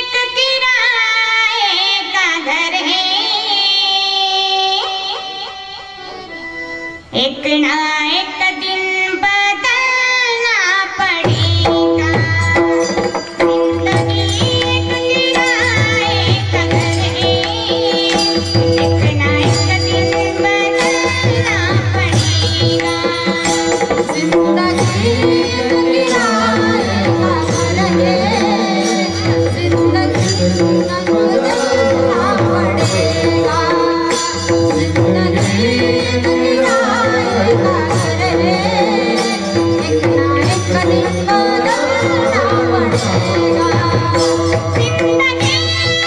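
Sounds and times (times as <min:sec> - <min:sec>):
person singing: 0:07.1 - 0:46.0
percussion beat: 0:11.0 - 0:46.0.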